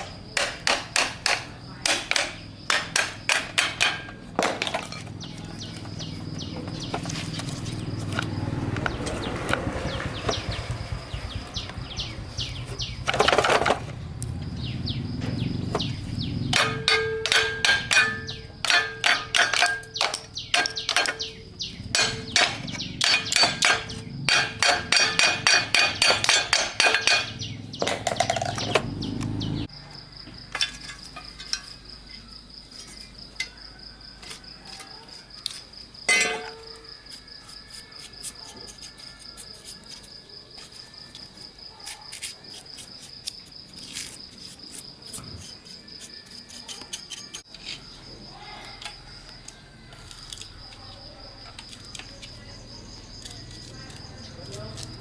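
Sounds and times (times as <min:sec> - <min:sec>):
crickets chirping: 0:00.0 - 0:55.0
rapid metallic tapping: 0:16.5 - 0:27.5.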